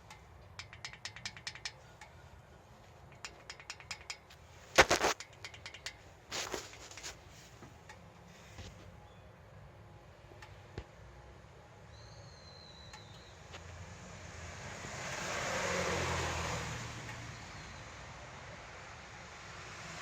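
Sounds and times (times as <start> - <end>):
ratchet wrench clicking: 0.0 - 2.1, 3.0 - 7.2.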